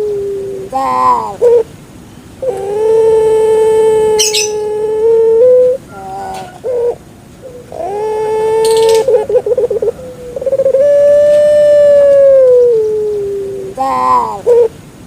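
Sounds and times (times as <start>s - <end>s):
dove cooing: 0.0s - 1.7s, 2.4s - 14.8s
high bird chirp: 4.2s - 4.6s, 8.6s - 10.8s.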